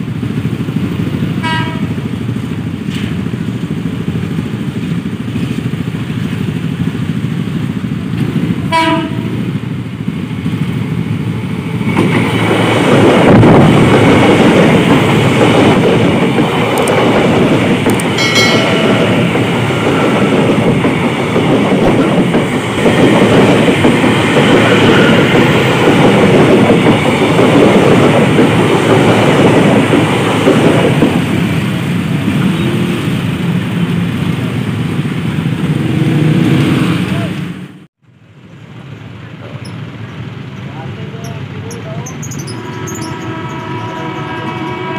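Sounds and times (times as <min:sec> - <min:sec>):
train wheels clattering on rails: 0:00.2 - 0:34.4
train horn toot: 0:01.4 - 0:02.0, 0:08.7 - 0:09.4, 0:42.4 - 0:44.9.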